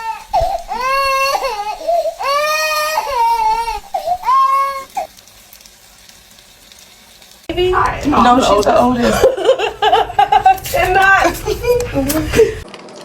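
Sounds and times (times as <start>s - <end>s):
child wailing: 0.0s - 5.0s.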